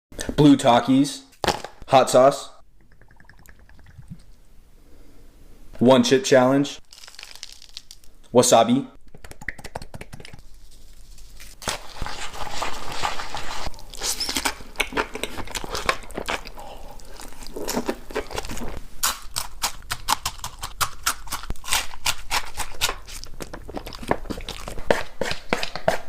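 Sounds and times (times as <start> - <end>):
crunchy chewing: 11.6 - 26.0.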